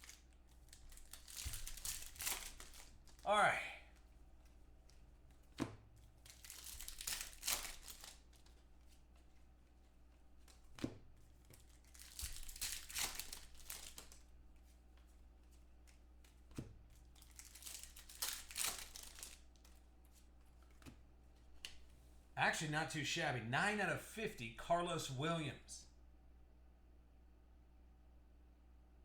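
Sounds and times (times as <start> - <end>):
foil wrappers tearing and crinkling: 0.0 - 3.3, 6.1 - 9.5, 11.4 - 14.3, 15.8 - 19.8.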